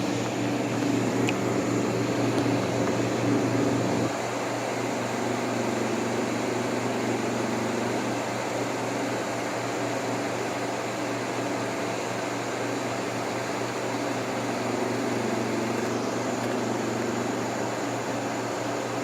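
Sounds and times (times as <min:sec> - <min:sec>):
air conditioner compressor hum: 0:00.0 - 0:19.0
blower fan rushing: 0:00.0 - 0:19.0.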